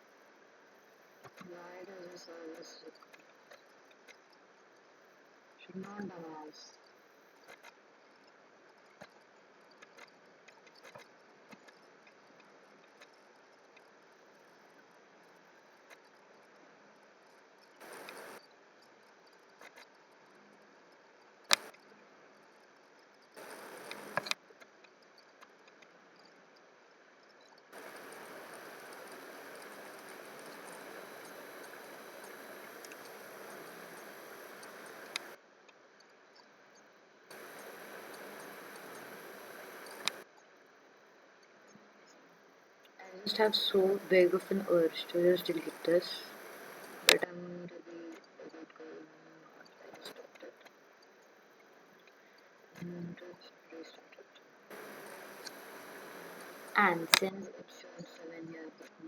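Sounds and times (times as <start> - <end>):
steady hiss: 0.0 - 4.0, 17.6 - 18.4, 21.5 - 21.8, 23.4 - 24.4, 27.7 - 35.4, 37.3 - 40.3, 42.6 - 47.3, 49.4 - 58.3
computer mouse clicks: 17.8 - 18.4, 21.5 - 21.8, 23.4 - 24.4, 27.8 - 35.4, 37.3 - 40.2, 54.7 - 57.3.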